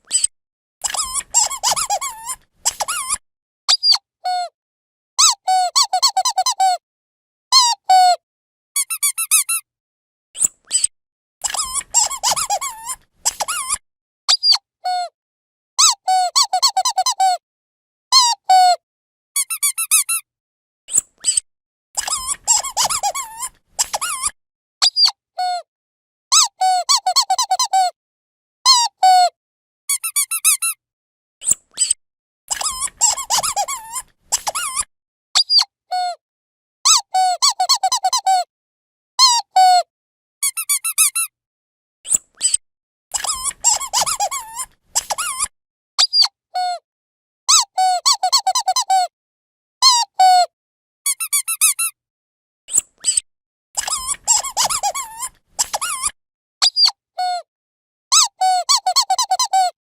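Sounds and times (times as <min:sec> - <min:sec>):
squeaky dog toy squeaking: 0:00.0 - 0:04.5, 0:05.2 - 0:06.8, 0:07.6 - 0:08.2, 0:08.8 - 0:09.6, 0:10.4 - 0:14.6, 0:15.8 - 0:17.4, 0:18.2 - 0:18.8, 0:19.4 - 0:20.2, 0:20.9 - 0:21.4, 0:22.0 - 0:25.6, 0:26.3 - 0:27.9, 0:28.7 - 0:29.3, 0:29.9 - 0:30.8, 0:31.4 - 0:36.1, 0:36.9 - 0:38.5, 0:39.2 - 0:41.3, 0:42.1 - 0:46.8, 0:47.5 - 0:49.1, 0:49.8 - 0:50.5, 0:51.1 - 0:52.0, 0:52.7 - 0:53.2, 0:53.8 - 0:57.5, 0:58.1 - 0:59.8.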